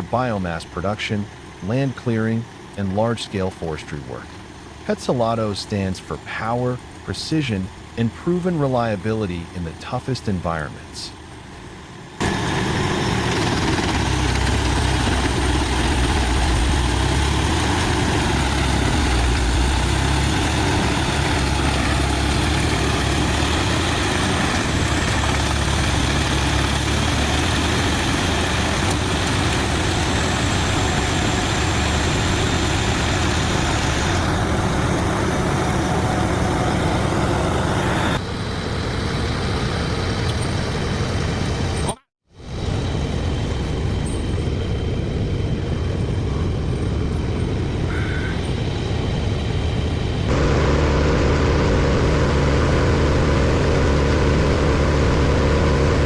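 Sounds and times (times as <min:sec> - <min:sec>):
deep engine rumble: 0:00.0 - 0:56.0
wood chipper running: 0:12.2 - 0:38.2, 0:50.2 - 0:56.0.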